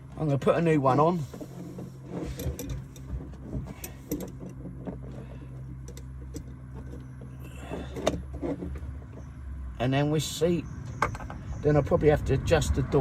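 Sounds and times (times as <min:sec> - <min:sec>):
rubbing: 0:01.1 - 0:05.4.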